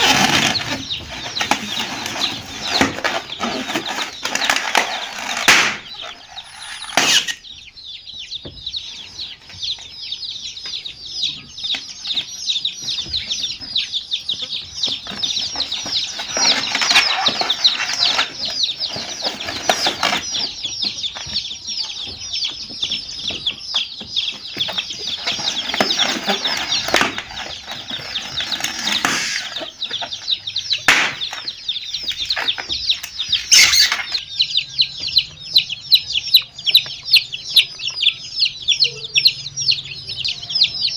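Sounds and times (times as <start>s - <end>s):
baby chicks peeping: 0.0s - 40.9s.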